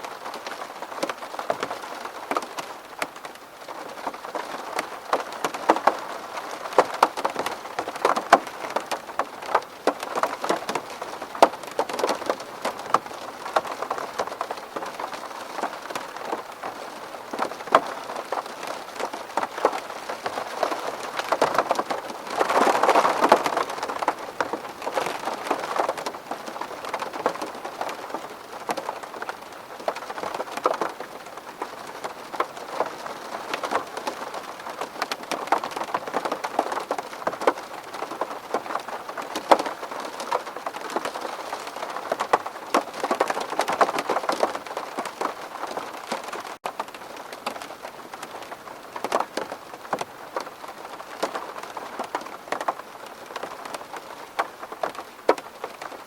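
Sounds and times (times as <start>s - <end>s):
rain on a window: 0.0s - 56.0s.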